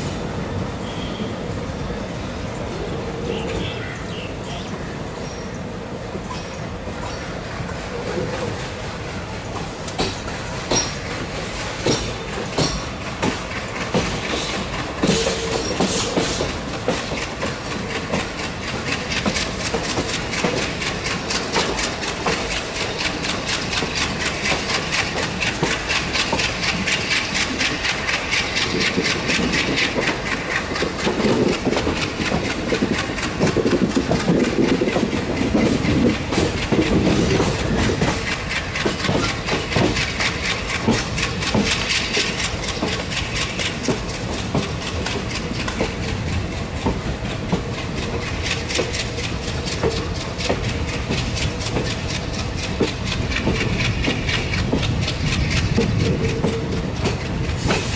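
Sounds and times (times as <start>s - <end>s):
train wheels clattering over rail joints: 5.3s - 57.9s.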